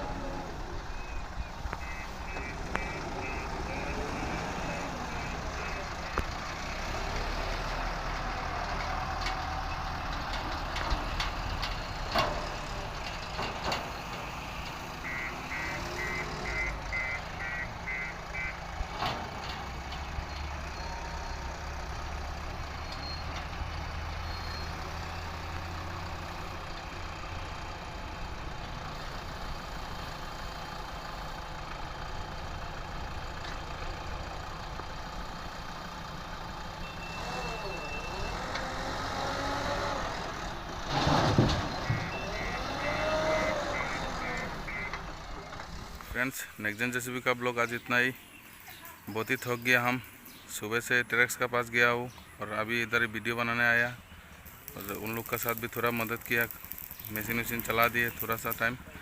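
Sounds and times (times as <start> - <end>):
diesel engines running: 0.0 - 59.0
reversing alarm beeps: 1.8 - 5.8, 14.2 - 18.5, 36.8 - 38.4, 41.7 - 45.0.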